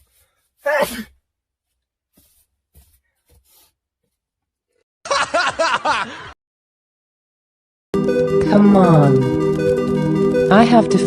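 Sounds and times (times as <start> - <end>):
person laughing: 5.1 - 6.3.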